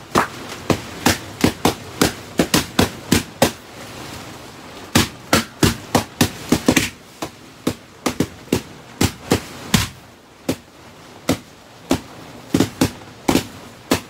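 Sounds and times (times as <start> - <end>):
balloons popping: 0.1 - 2.6.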